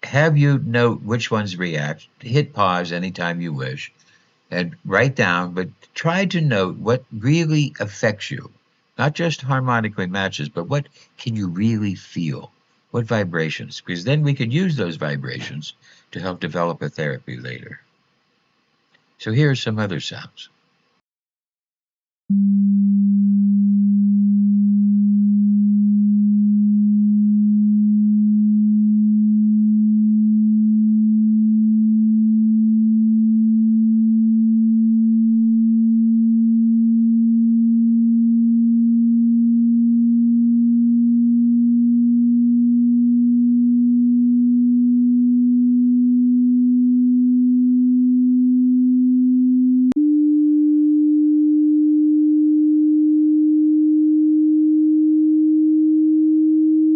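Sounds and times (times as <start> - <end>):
low sine test tone: 0.0 - 10.8, 22.3 - 56.9.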